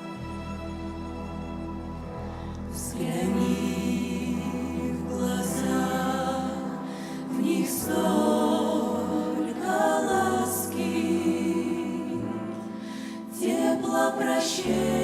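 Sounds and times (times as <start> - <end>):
instrumental accompaniment: 0.0 - 9.9
choir singing held notes: 0.0 - 15.0.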